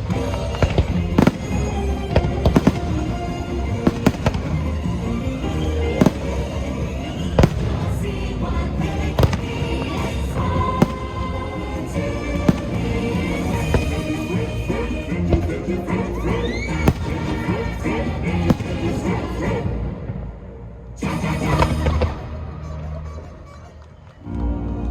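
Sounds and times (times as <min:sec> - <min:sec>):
fireworks bangs: 0:00.0 - 0:08.2, 0:09.1 - 0:14.4, 0:16.8 - 0:19.6.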